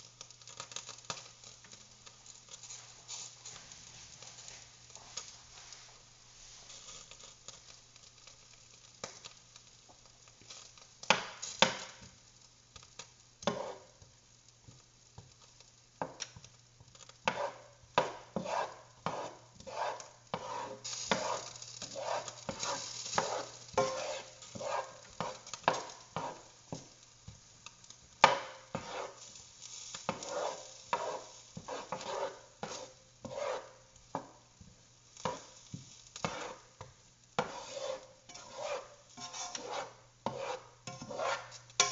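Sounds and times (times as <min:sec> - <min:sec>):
sizzling hiss: 0:00.0 - 0:41.9.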